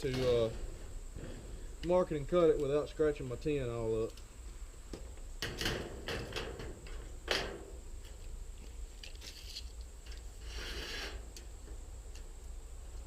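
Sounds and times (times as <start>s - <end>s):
sheet metal scraping: 0.0s - 1.7s, 10.4s - 11.4s.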